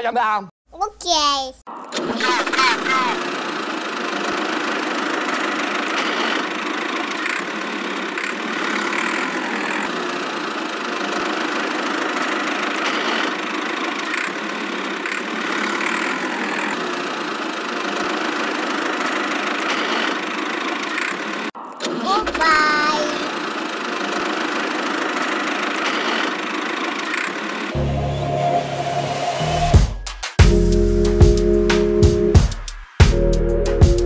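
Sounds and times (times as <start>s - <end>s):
small engine running steadily: 2.6s - 21.6s, 22.5s - 27.8s.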